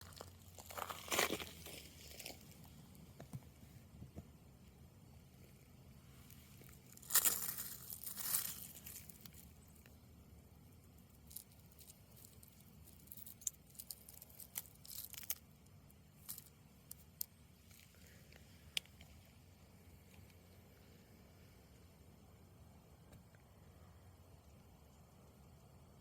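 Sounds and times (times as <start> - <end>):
loud crunching rustle: 0.0 - 2.7, 6.3 - 9.8, 11.2 - 15.5
small crackles and clicks: 6.3 - 10.0, 11.1 - 19.2.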